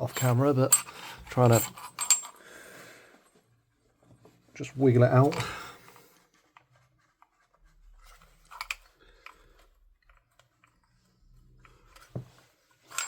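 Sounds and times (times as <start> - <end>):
metal parts scraping and clicking: 0.0 - 2.4, 8.4 - 8.9.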